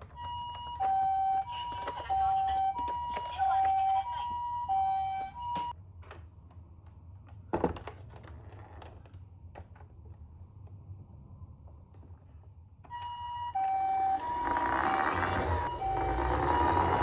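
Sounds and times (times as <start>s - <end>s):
toy two-tone siren: 0.1s - 5.7s, 12.9s - 17.0s.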